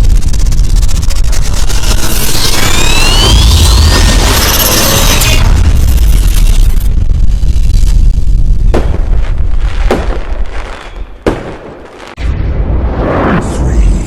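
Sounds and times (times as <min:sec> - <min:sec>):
sharp cracks: 0:00.0 - 0:12.2
explosion-like booms: 0:05.4 - 0:14.0.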